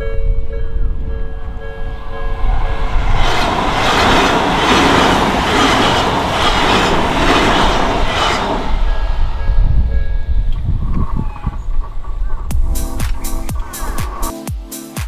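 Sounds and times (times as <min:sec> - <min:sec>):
level crossing warning bell: 0:00.0 - 0:06.8
train wheels clattering over rail joints: 0:02.8 - 0:09.8.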